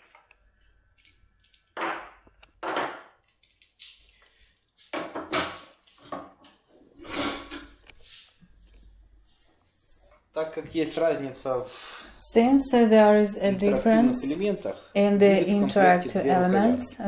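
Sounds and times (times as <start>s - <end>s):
keys and tools rustling and knocking: 1.0s - 7.8s.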